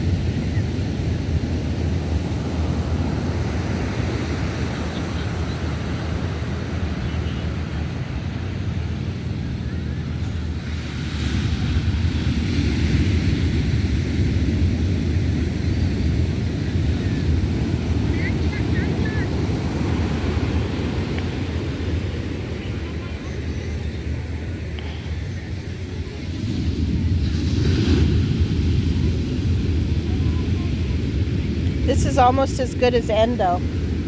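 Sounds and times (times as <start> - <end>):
wind buffeting microphone: 0.0 - 34.0
surf breaking on beach: 7.6 - 34.0.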